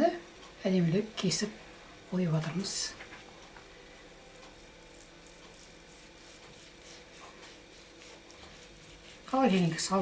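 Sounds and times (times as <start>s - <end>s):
knife slicing through food: 4.9s - 9.6s.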